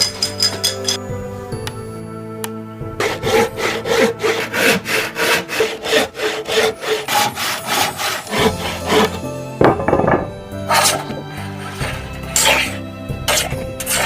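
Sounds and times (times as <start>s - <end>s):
rhythmic rasping strokes: 3.0s - 14.0s.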